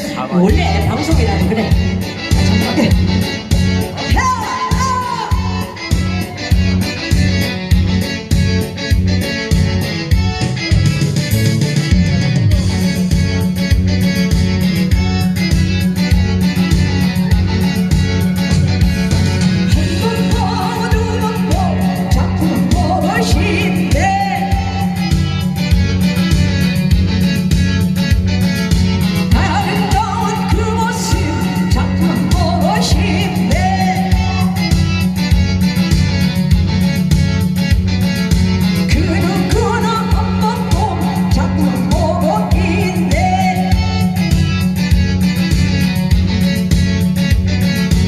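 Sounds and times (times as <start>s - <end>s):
upbeat backing track with bass: 0.0s - 48.0s.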